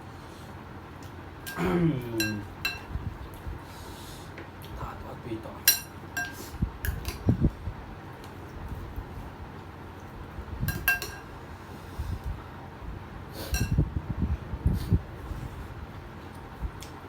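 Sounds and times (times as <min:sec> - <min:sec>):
cutlery clinking on dishes: 0:01.4 - 0:02.9, 0:05.7 - 0:07.2, 0:10.7 - 0:11.3, 0:13.5 - 0:13.8.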